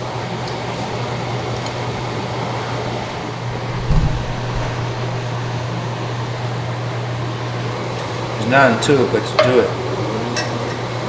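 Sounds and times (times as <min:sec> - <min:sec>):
fan whooshing with low hum: 0:00.0 - 0:11.0
low thump: 0:03.2 - 0:06.2.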